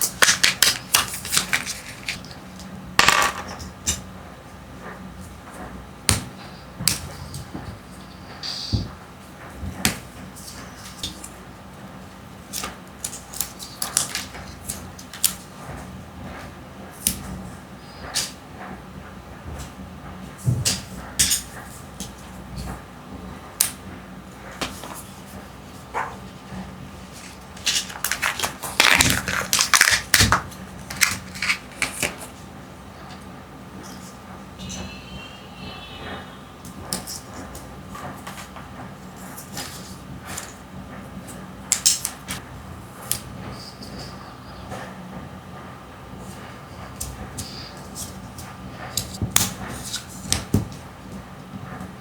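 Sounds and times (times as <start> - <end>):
plastic packaging clicks and crinkles: 0.0 - 2.7, 27.2 - 32.3.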